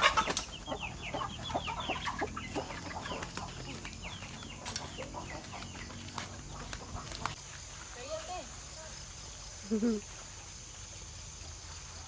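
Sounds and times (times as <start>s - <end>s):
chickens peeping: 0.0s - 7.4s.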